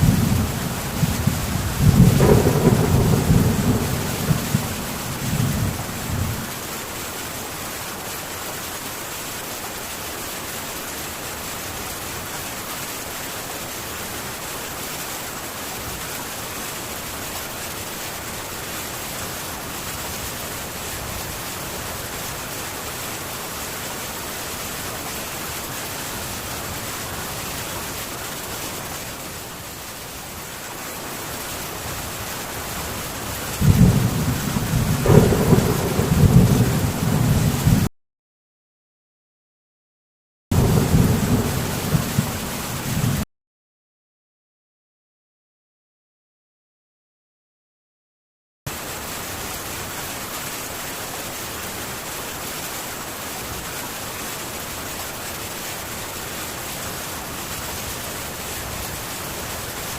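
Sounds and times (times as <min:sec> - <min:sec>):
thunder rumble: 0:00.0 - 0:06.5, 0:33.6 - 0:37.9, 0:40.5 - 0:43.2
heavy rain on a tin roof: 0:00.0 - 0:37.9, 0:40.5 - 0:43.3, 0:48.7 - 0:59.9.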